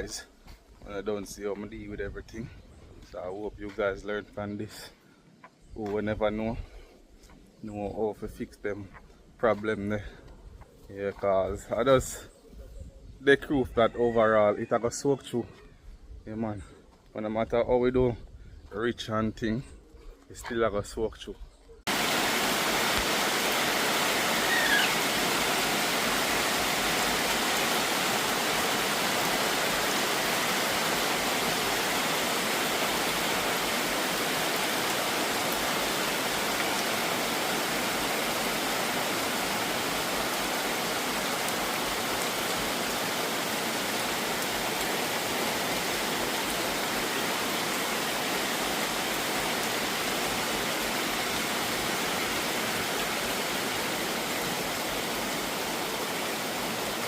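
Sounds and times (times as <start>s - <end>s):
rushing water: 21.9s - 57.0s
falling chirp: 24.4s - 25.0s.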